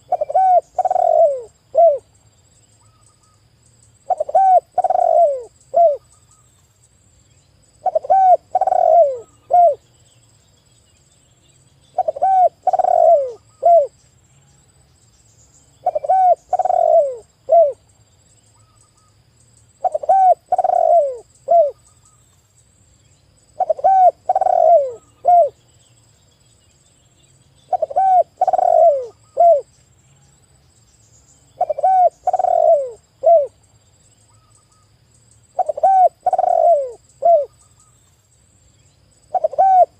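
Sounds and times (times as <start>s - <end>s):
dove cooing: 0.0s - 2.1s, 4.0s - 6.0s, 7.8s - 9.8s, 11.9s - 14.0s, 15.8s - 17.8s, 19.8s - 21.8s, 23.6s - 25.6s, 27.7s - 29.7s, 31.6s - 33.6s, 35.6s - 37.6s, 39.3s - 39.9s.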